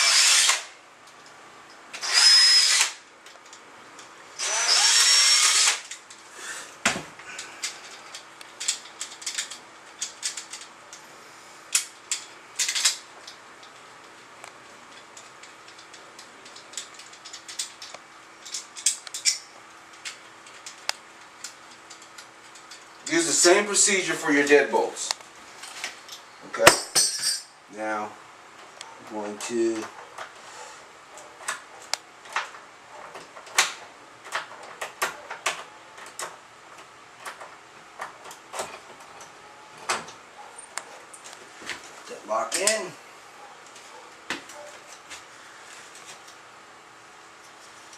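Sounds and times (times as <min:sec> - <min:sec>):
metal lock parts clinking: 0:07.6 - 0:10.8, 0:11.7 - 0:13.9, 0:14.9 - 0:23.2.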